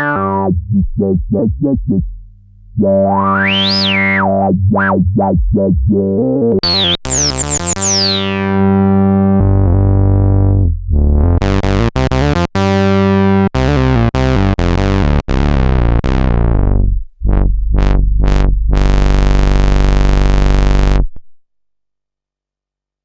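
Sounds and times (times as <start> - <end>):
synthesizer plucked notes: 0.0 - 21.1
analog synthesizer buzzy notes: 0.0 - 21.2.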